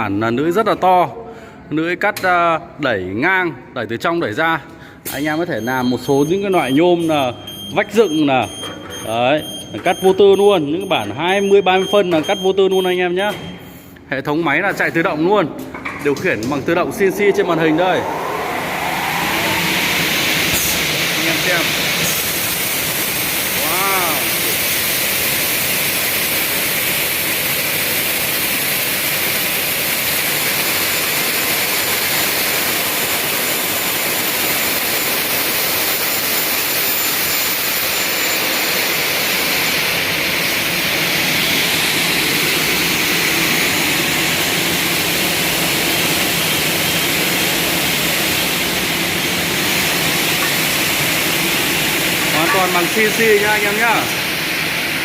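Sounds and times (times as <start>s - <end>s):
faint high whine: 15.2s - 22.3s
circular saw blades whirring: 16.0s - 22.3s.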